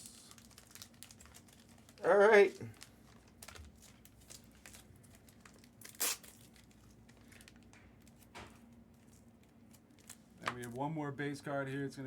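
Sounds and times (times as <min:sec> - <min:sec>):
cards and plastic packaging crinkling: 0:00.0 - 0:10.8.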